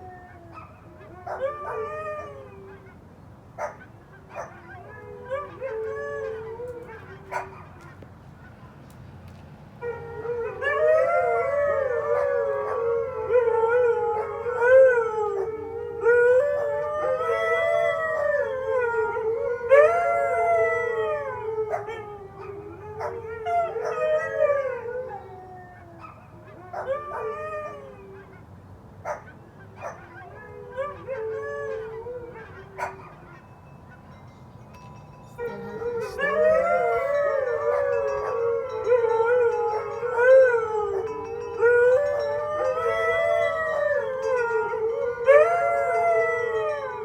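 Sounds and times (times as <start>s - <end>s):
dogs yipping: 3.6s - 5.8s, 6.8s - 8.0s, 29.0s - 31.0s, 31.8s - 33.5s, 35.4s - 38.8s
huskies howling: 9.8s - 28.4s, 35.4s - 47.0s.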